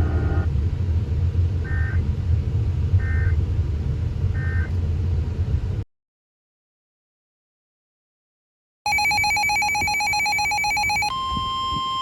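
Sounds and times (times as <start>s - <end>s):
car road noise rumble: 0.0s - 5.8s.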